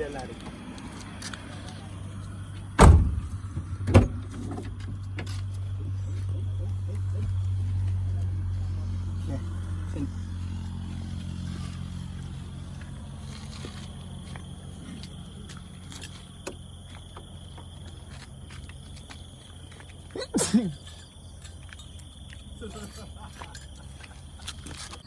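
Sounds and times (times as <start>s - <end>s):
small car engine running: 3.6s - 18.7s.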